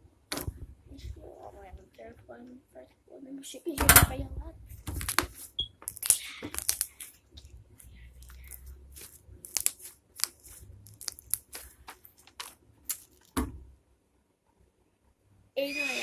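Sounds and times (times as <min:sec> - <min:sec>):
slime squeezed with sticky pops: 0:04.8 - 0:07.5, 0:08.2 - 0:13.4.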